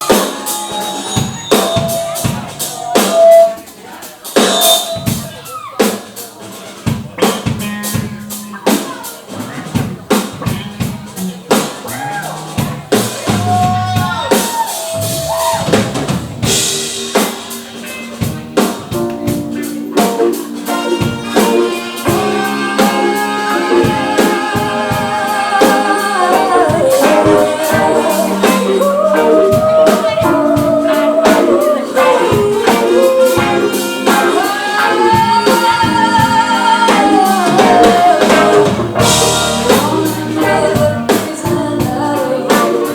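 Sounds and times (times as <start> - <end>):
drum kit rimshots: 0.0 - 42.9
live band playing: 0.0 - 42.9
lead vocalist singing: 19.9 - 42.9.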